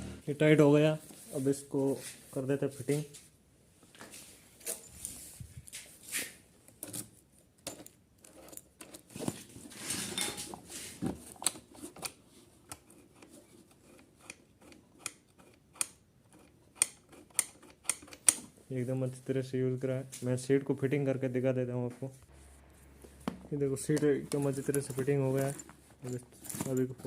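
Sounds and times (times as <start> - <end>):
scraping rustle: 9.1 - 12.0, 24.4 - 27.0
metal tools clattering: 9.8 - 10.6, 24.0 - 27.0.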